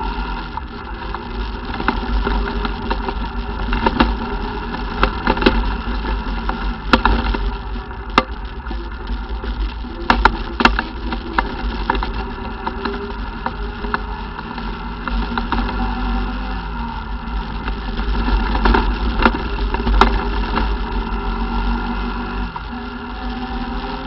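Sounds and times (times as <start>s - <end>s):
atv engine rumbling: 0.0s - 24.0s
sharp knocks and clacks: 0.6s - 15.8s, 17.5s - 20.9s.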